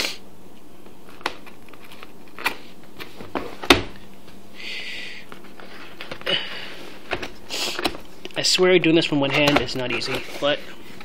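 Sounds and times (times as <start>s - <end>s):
packaging rustling: 1.0s - 3.8s.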